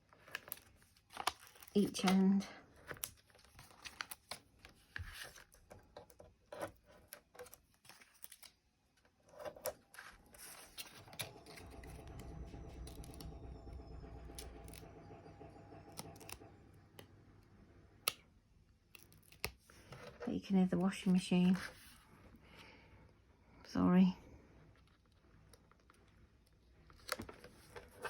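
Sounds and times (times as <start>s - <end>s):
washing machine humming: 9.9s - 18.0s.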